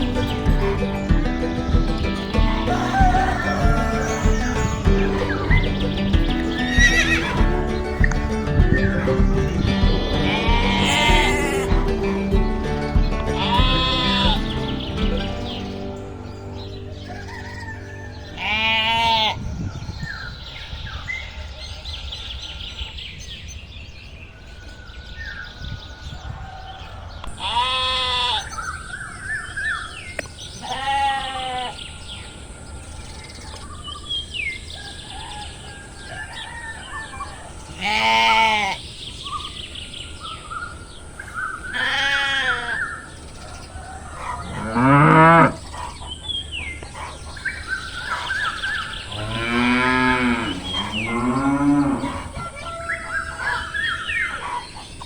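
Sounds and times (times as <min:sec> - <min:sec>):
sheep bleating: 0:00.0 - 0:15.7, 0:18.3 - 0:19.5, 0:27.4 - 0:28.5, 0:30.6 - 0:31.8, 0:37.8 - 0:38.8, 0:41.7 - 0:42.9
bird chirps: 0:00.0 - 0:27.4, 0:42.6 - 0:55.0.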